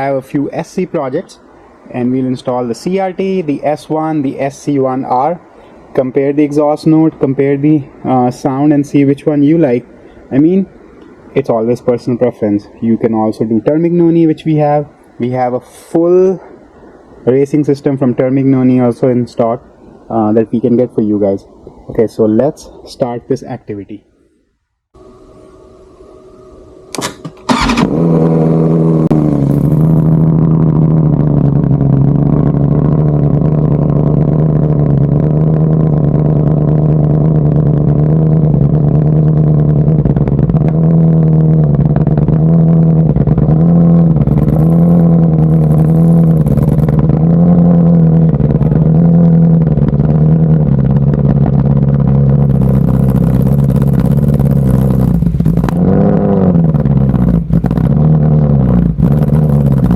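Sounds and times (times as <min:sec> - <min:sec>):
motorcycle engine revving: 0:25.0 - 0:59.9
motorcycle engine starting and idling: 0:25.0 - 0:59.9.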